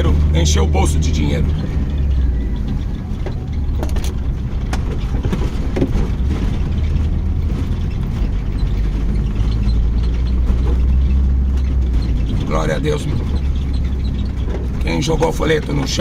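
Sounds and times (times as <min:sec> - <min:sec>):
vehicle rumble: 0:00.0 - 0:16.0.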